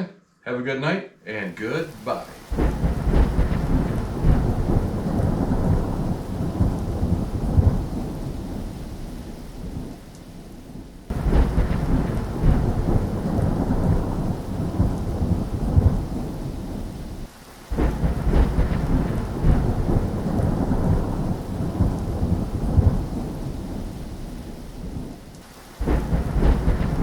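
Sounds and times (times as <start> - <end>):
steady rain: 1.3 - 27.0
rolling thunder: 1.9 - 27.0.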